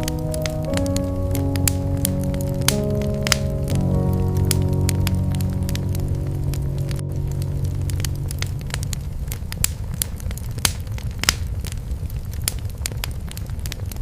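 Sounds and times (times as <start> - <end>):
soft music: 0.0 - 9.8
fire popping: 0.0 - 14.0
wood fire crackling: 0.0 - 14.0.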